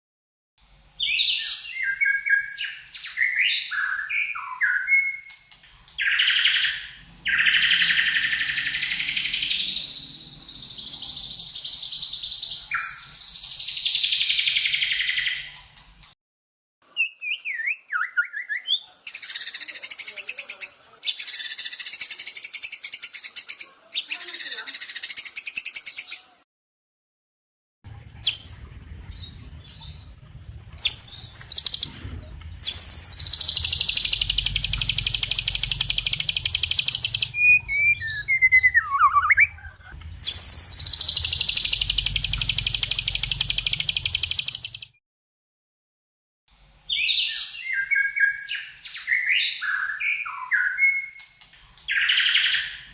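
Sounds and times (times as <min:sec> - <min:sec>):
low steady hum: 0:27.9 - 0:32.6
songbird rattling trills: 0:30.8 - 0:31.9, 0:32.6 - 0:38.2, 0:40.2 - 0:44.9
whistled bird notes sweeping down: 0:32.6 - 0:39.6, 0:40.2 - 0:45.0.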